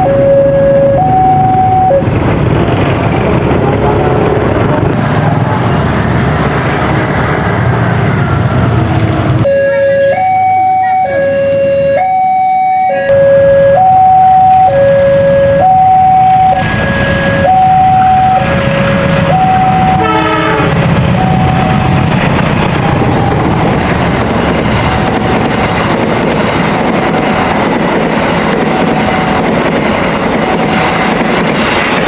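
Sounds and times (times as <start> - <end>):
crossing alarm ringing two tones: 0.0 - 2.0, 9.5 - 20.1
train rumble and wheel noise: 0.0 - 32.0
train horn blast: 9.5 - 22.0.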